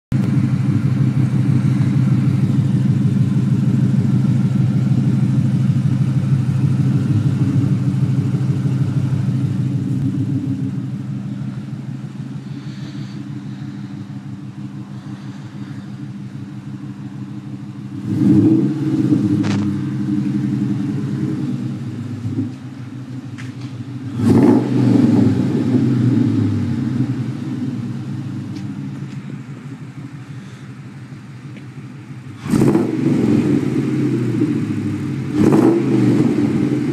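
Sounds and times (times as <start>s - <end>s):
engine revving with sharp pop: 0.1s - 0.8s, 18.0s - 21.4s, 23.3s - 26.5s, 32.4s - 36.9s
engine with exhaust leak idling: 0.1s - 36.9s.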